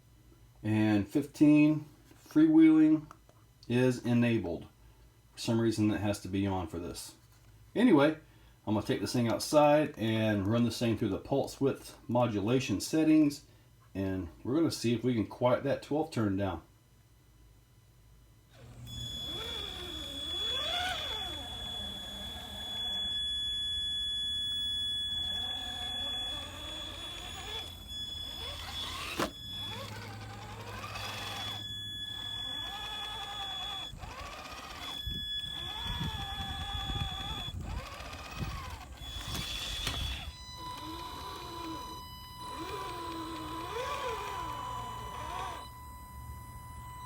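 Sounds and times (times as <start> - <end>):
lower drivetrain whine: 18.5 - 47.0
high-pitched motor whine: 18.6 - 47.0.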